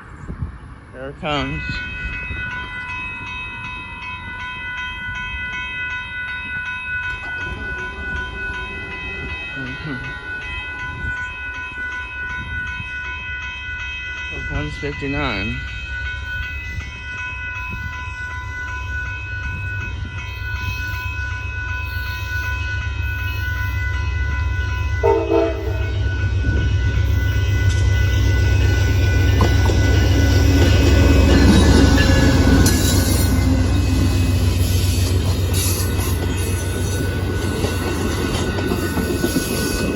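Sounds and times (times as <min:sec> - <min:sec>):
train wheel noise: 0:00.0 - 0:39.9
diesel locomotive engine rumble: 0:06.5 - 0:39.9
train air horn blast: 0:25.0 - 0:26.0.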